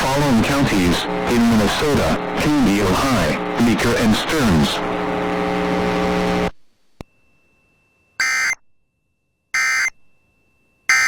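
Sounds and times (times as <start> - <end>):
low buzz: 0.0 - 6.5
harsh digital data tones: 8.2 - 8.6, 9.6 - 10.0.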